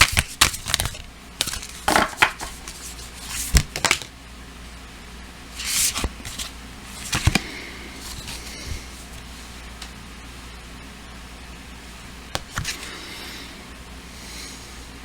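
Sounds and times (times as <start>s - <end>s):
cards being shuffled: 0.0s - 4.1s, 5.6s - 9.9s, 12.3s - 12.9s.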